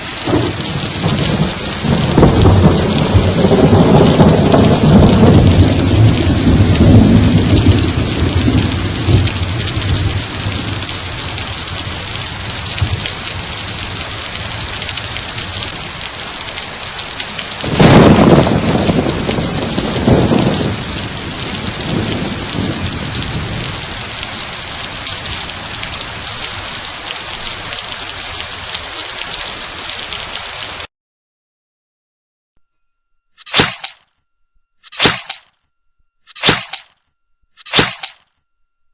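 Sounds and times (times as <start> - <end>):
thunder rumbling: 0.0 - 30.8
heavy rain: 0.0 - 30.9.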